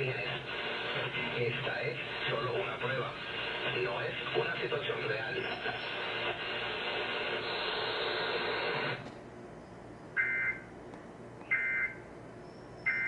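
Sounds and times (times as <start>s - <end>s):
steady hiss: 0.0s - 9.0s.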